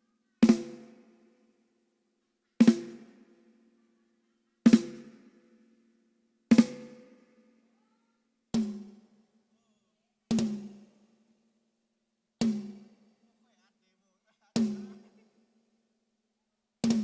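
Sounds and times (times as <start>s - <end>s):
drum hits ringing: 14.6s - 15.4s.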